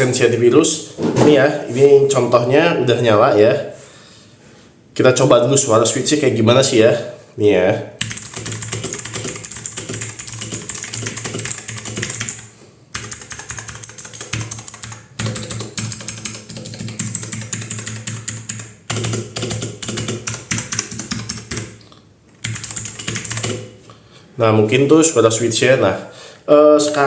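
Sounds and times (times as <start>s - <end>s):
mechanical keyboard typing: 8.0s - 21.8s, 22.4s - 23.7s.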